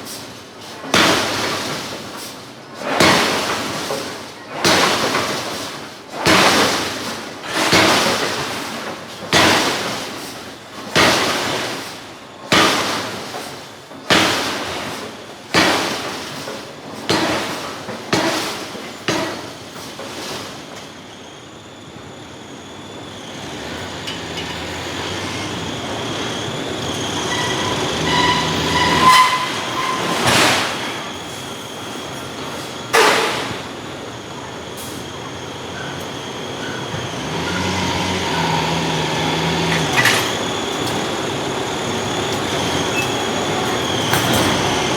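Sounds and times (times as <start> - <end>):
machine noise with metallic squealing: 16.1 - 44.9
forging hammer blows on steel: 23.7 - 34.0.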